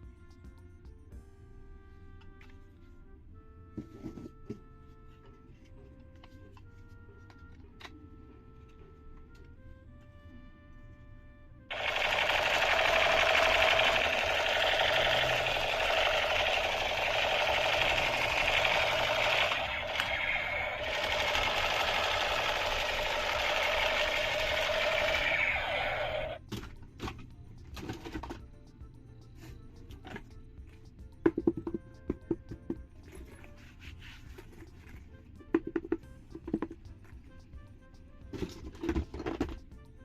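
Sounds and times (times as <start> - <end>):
toy motor rattling: 11.7 - 26.4.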